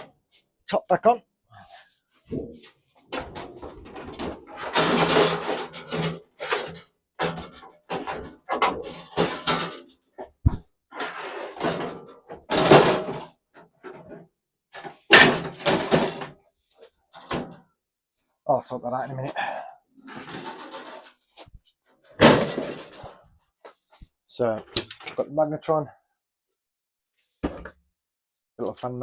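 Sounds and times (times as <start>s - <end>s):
thin metal rattling and scraping: 3.0s - 9.9s, 20.1s - 21.2s.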